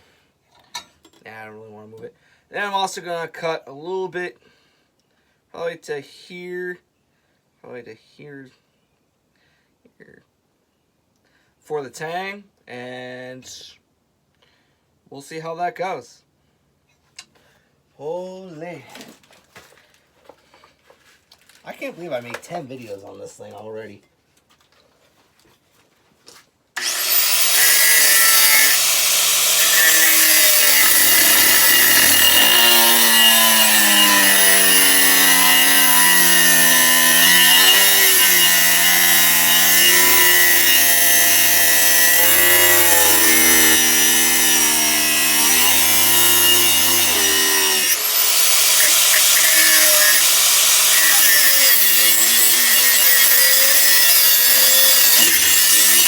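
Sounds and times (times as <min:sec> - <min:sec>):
power tool cutting steel: 0:26.8 - 0:56.0.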